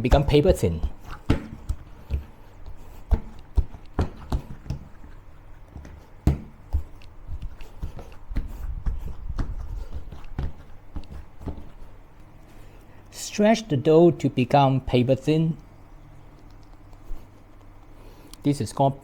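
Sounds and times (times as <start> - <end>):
dough kneaded by hand: 0.0 - 19.0.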